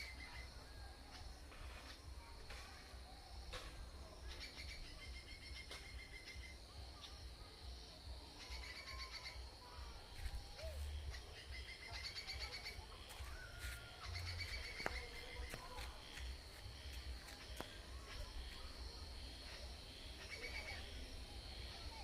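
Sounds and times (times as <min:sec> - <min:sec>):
small birds trilling: 0:08.4 - 0:15.7.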